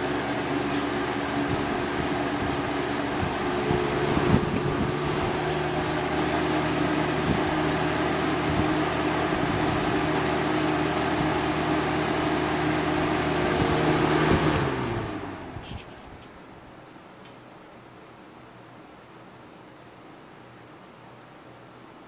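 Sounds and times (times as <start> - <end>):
air rushing from fan blades: 0.0 - 16.6
fan motor humming: 0.0 - 22.0
fan switch click: 3.2 - 6.5.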